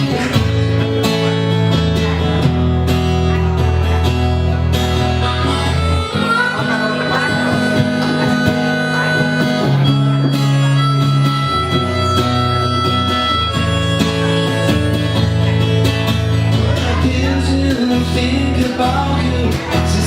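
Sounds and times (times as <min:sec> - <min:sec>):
strummed acoustic guitar: 0:00.0 - 0:20.0
harmonica held notes: 0:05.0 - 0:16.4.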